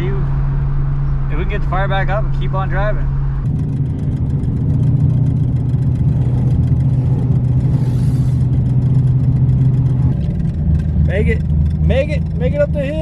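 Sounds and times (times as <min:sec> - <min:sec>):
car engine running: 0:00.0 - 0:13.0
fast even engine knocking: 0:03.5 - 0:13.0.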